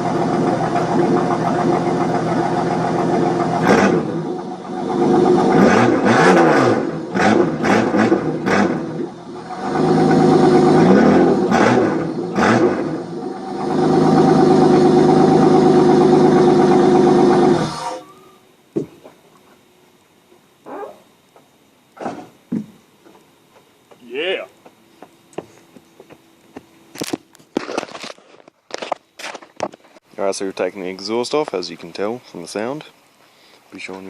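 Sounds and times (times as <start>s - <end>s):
car engine idling and revving: 0.0s - 18.1s.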